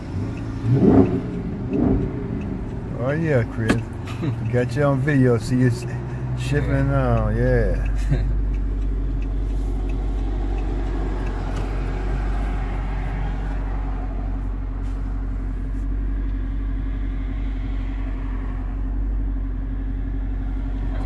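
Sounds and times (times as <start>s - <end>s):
car engine droning: 0.0s - 21.0s
tyre and road noise: 0.0s - 21.0s.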